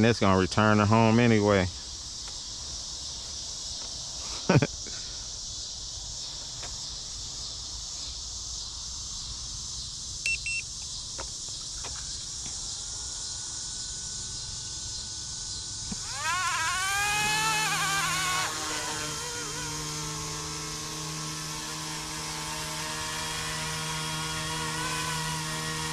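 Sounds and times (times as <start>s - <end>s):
steady high hiss: 0.0s - 25.9s
short beeps: 10.2s - 10.7s
helicopter motor and rotor whine: 10.4s - 25.9s.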